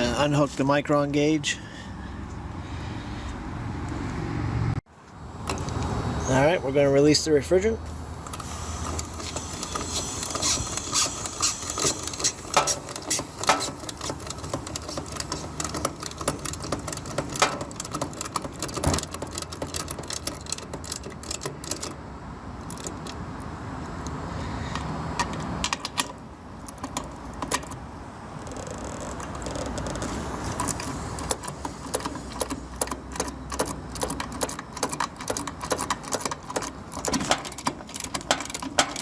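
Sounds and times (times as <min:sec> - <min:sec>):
metal tools clicking and rattling: 0:08.3 - 0:22.0, 0:28.9 - 0:39.0.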